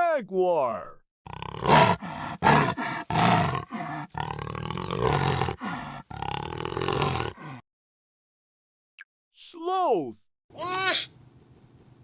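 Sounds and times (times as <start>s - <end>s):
jaguar roaring: 1.3s - 7.5s.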